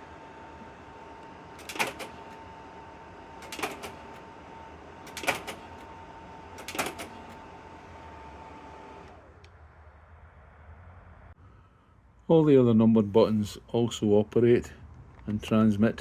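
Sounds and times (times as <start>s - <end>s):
slide projector clicks: 1.2s - 2.4s, 3.4s - 4.3s, 5.0s - 5.9s, 6.6s - 7.5s.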